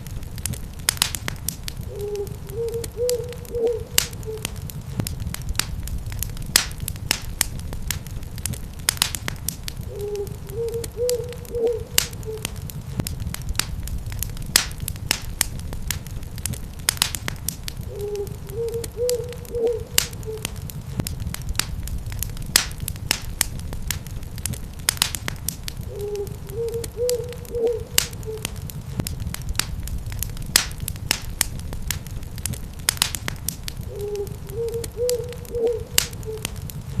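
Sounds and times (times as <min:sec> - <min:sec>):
wood fire crackling and popping: 0:00.0 - 0:37.0
owl hooting: 0:01.8 - 0:04.6, 0:09.9 - 0:12.6, 0:17.9 - 0:20.6, 0:25.9 - 0:28.6, 0:33.9 - 0:36.6.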